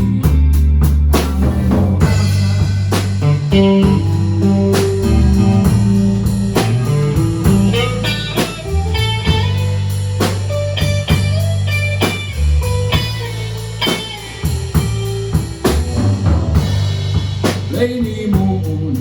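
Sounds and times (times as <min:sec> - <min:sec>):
blues band playing: 0:00.0 - 0:19.0
person singing: 0:01.1 - 0:03.8, 0:17.7 - 0:19.0.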